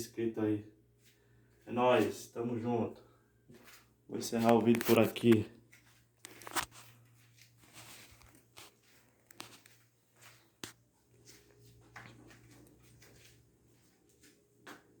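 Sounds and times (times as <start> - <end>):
soft handling clicks and knocks: 4.4 - 13.4.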